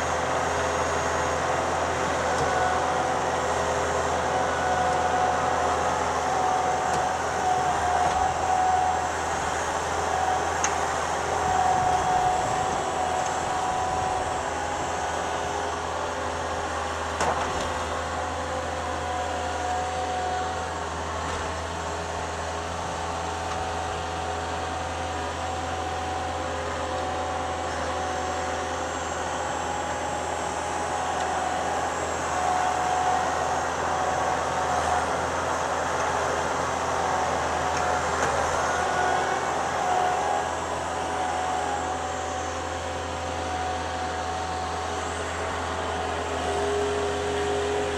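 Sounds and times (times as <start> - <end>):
skid steer engine running: 0.0 - 47.9.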